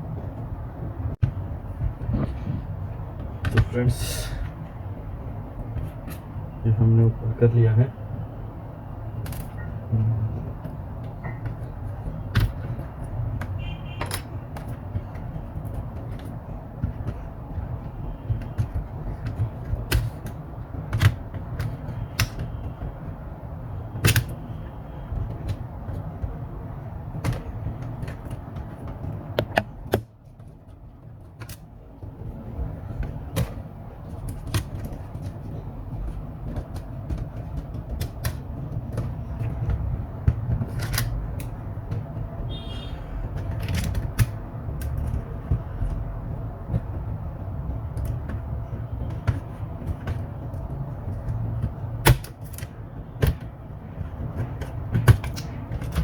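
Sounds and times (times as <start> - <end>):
plastic parts clicking and knocking: 2.9 - 6.5, 9.0 - 56.0.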